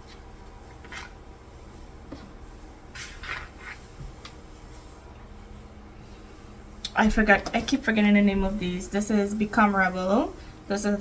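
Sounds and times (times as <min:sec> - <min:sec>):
rustling and scraping of items: 0:00.0 - 0:01.3, 0:02.0 - 0:04.9.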